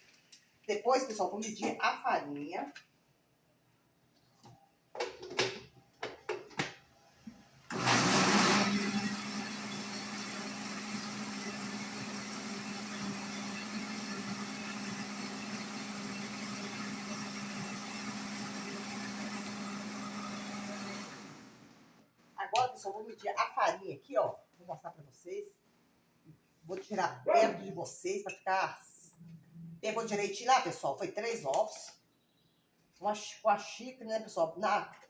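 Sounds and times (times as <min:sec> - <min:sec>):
countertop blender running: 0:07.7 - 0:22.0.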